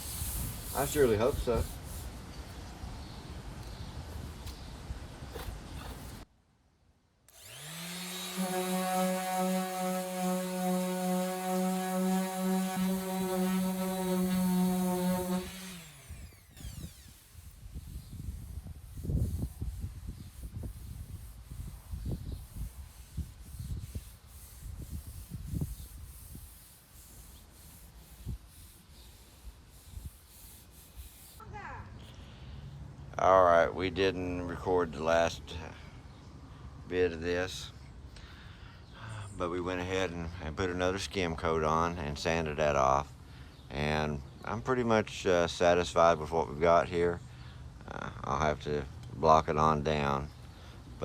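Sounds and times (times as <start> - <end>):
rubbing strokes on filler: 0.0 - 2.3, 7.4 - 31.4
electric sander motor whine: 7.3 - 17.6.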